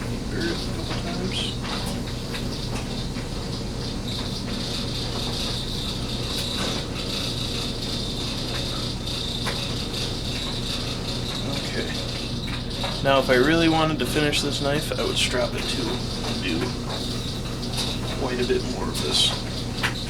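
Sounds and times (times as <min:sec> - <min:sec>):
steady high whine: 0:11.4 - 0:19.9.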